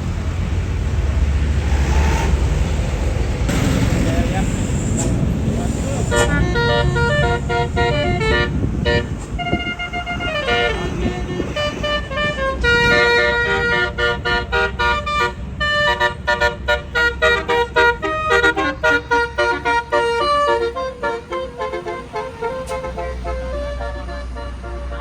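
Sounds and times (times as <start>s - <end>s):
low engine rumble: 0.0s - 25.0s
musical bus horn melody: 5.9s - 25.0s.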